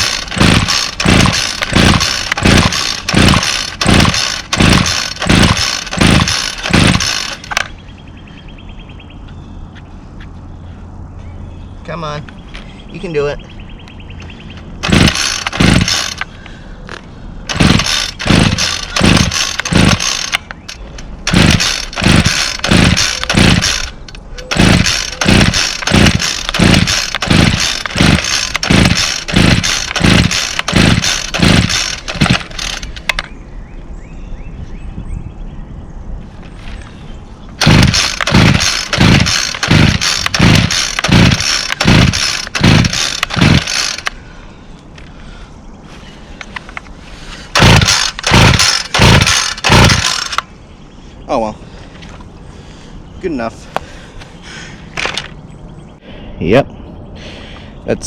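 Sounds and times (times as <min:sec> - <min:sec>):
engine turning over: 0:00.0 - 0:07.7, 0:14.8 - 0:16.3, 0:17.5 - 0:33.3, 0:37.6 - 0:44.2, 0:47.5 - 0:50.5
recoil starter pulls: 0:00.0 - 0:07.7, 0:14.8 - 0:16.3, 0:17.5 - 0:33.3, 0:37.6 - 0:44.2, 0:47.5 - 0:50.5.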